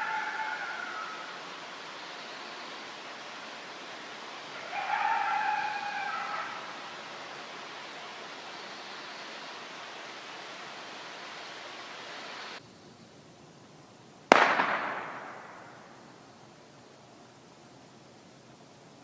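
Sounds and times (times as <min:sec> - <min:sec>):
animal call: 0:00.0 - 0:01.6, 0:04.4 - 0:07.2
steady hiss: 0:00.0 - 0:19.0
gunshot with echo: 0:14.3 - 0:16.0.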